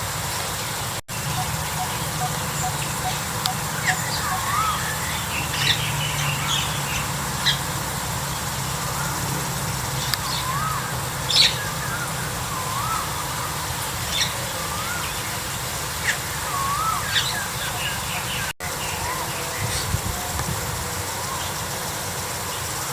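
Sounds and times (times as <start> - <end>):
bird warbled notes: 1.1 - 7.6.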